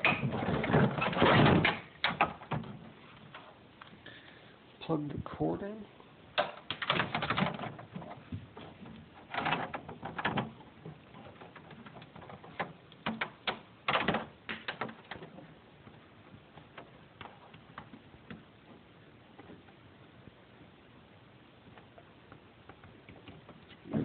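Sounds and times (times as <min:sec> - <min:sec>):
plastic parts clicking: 0:06.4 - 0:15.4.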